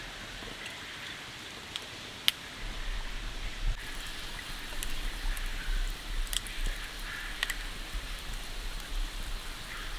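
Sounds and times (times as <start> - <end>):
rain falling: 0.0 - 9.9
raindrops ticking: 3.7 - 9.9.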